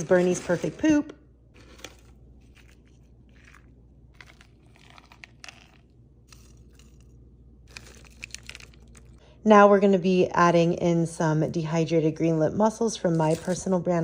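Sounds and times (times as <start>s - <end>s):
faint package scraping and crinkling: 0.0s - 1.0s, 1.6s - 9.2s, 13.1s - 13.7s.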